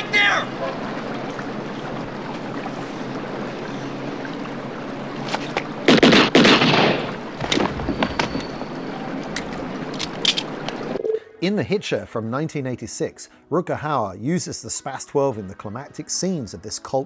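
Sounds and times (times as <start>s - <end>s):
steady background hiss: 0.0s - 13.6s
gunshots with ringing tail: 5.9s - 7.8s.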